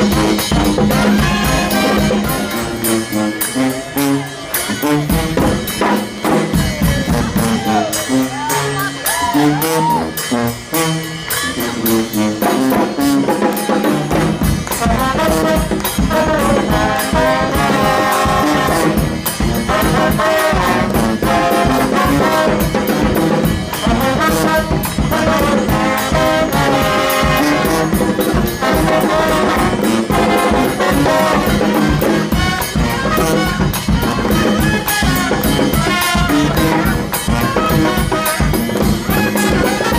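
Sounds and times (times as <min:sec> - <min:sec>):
brass band playing: 0:00.0 - 0:39.9.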